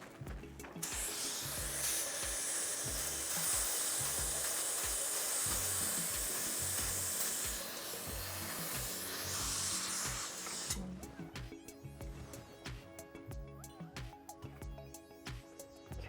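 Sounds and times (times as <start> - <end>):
background music with low beat: 0.0 - 16.0
dental spray hissing: 0.8 - 10.9.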